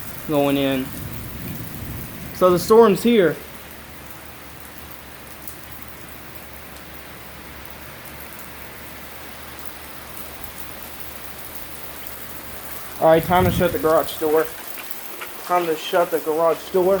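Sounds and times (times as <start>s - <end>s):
steady rain: 0.0s - 17.0s
faint drip ticks: 3.4s - 13.0s.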